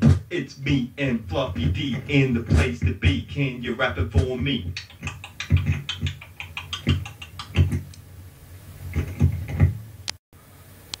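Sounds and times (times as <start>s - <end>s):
beatboxing: 0.0s - 7.9s, 8.9s - 9.7s.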